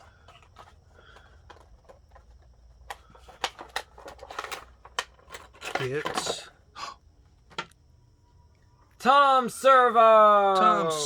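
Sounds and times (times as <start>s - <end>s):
packaging clicks and rustles: 0.0s - 6.4s.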